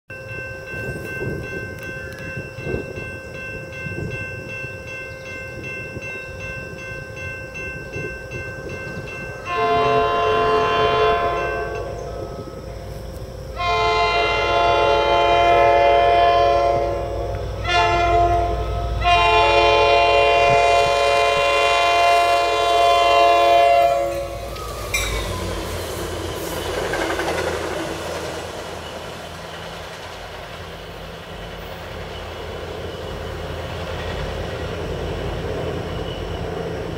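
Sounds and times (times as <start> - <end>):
steady ringing tones: 0.1 - 20.5, 21.4 - 36.9
locomotive air horn blasts: 9.4 - 12.1, 13.6 - 25.3.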